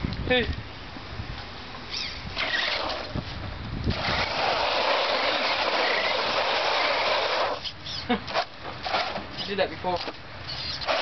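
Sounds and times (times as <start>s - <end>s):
toy truck rushing noise: 1.9s - 3.2s, 3.9s - 9.6s, 10.5s - 11.0s.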